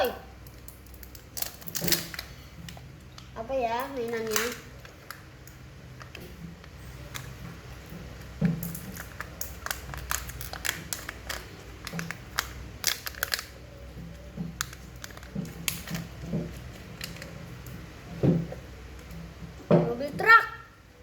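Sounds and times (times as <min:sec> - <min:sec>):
plastic packaging crinkling: 0:00.4 - 0:03.3, 0:04.0 - 0:17.8.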